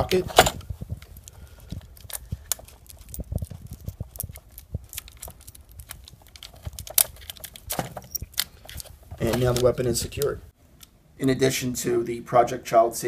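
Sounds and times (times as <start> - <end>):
lock snapping shut: 0.3 - 0.7
gun lock clicks and rattles: 0.3 - 10.4.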